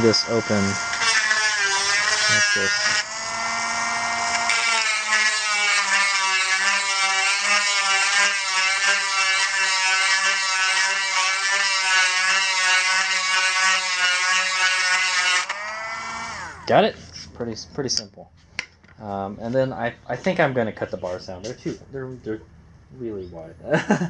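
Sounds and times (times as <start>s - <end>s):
rotary tool grinding plastic: 0.0s - 18.0s.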